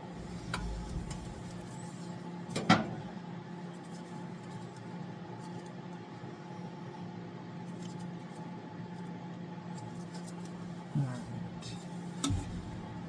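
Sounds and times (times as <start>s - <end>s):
steady low hum: 0.0s - 3.8s, 9.9s - 13.0s.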